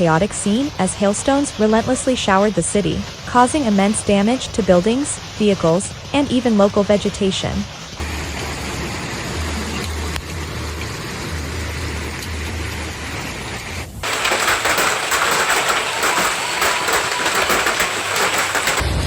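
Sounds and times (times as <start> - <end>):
hail pelting down: 0.0 - 8.2, 14.0 - 19.0
hailstones striking hard surfaces: 14.0 - 19.0.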